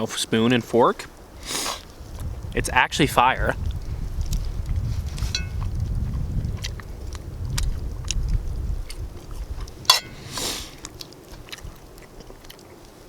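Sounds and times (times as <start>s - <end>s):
wind rumbling on microphone: 0.0s - 12.6s
chewing and biting food: 3.6s - 13.0s.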